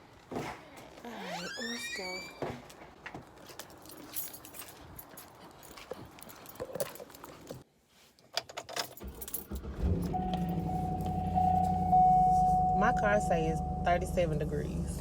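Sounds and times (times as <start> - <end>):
handling clicks and rustling: 2.6 - 12.6
keys jangling: 3.4 - 7.6, 8.4 - 11.1
car engine humming: 9.5 - 15.0
steady high tone: 10.2 - 15.0.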